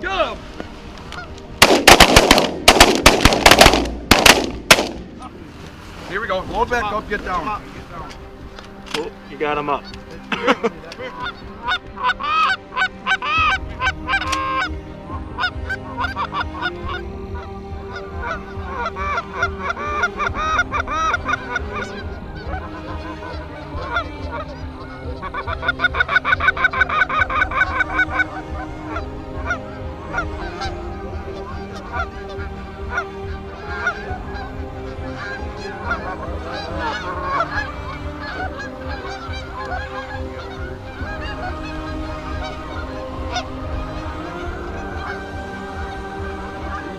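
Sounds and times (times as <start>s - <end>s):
geese honking: 1.0s - 14.7s, 15.4s - 46.9s.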